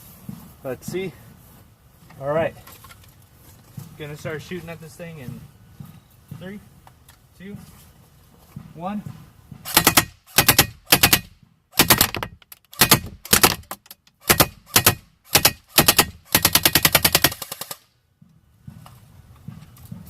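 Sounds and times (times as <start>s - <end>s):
airsoft rifle firing full auto: 9.7s - 17.9s.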